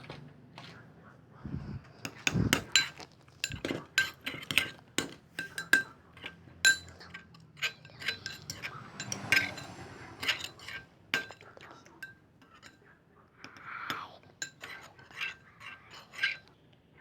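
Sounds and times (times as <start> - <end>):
utensil clinking against container: 2.1 - 12.8.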